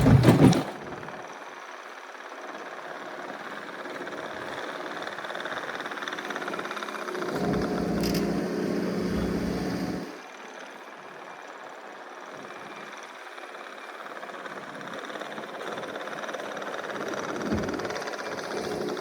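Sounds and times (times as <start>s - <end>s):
diesel engine running: 3.4s - 10.5s, 16.1s - 19.0s.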